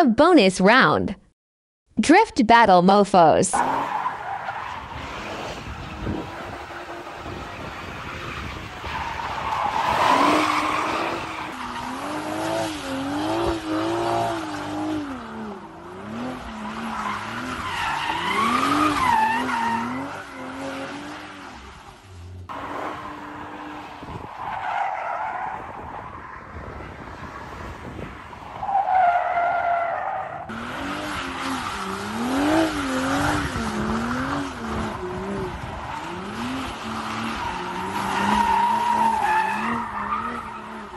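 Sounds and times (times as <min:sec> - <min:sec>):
engine revving: 0:09.9 - 0:21.2, 0:30.4 - 0:40.9.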